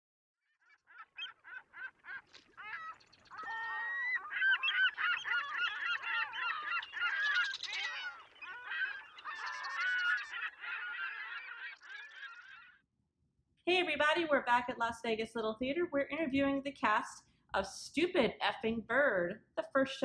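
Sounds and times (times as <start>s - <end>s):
flock of birds calling: 0.6s - 12.8s.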